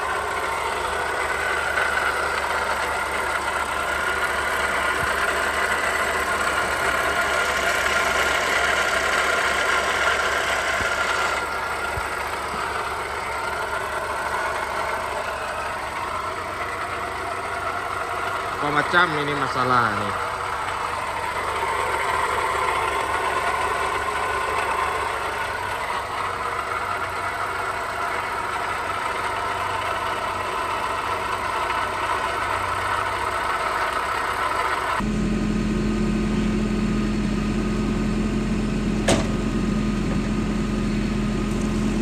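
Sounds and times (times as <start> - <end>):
car engine idling: 0.0 - 42.0
deep steady hum: 35.0 - 42.0.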